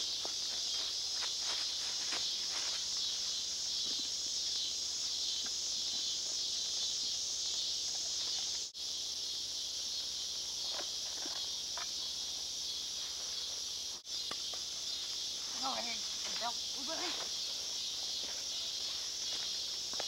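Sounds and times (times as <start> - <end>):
footsteps through brush: 0.0 - 4.0, 16.8 - 20.0
insect chorus hiss: 0.0 - 20.0.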